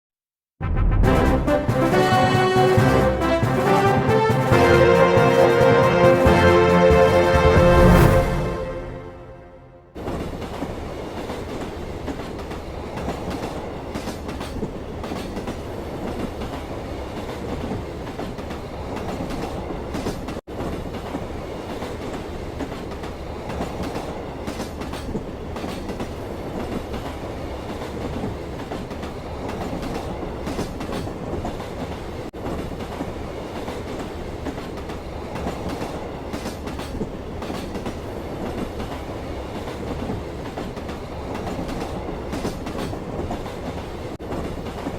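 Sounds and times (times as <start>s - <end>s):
train wheels rumbling on rails: 10.0s - 44.9s.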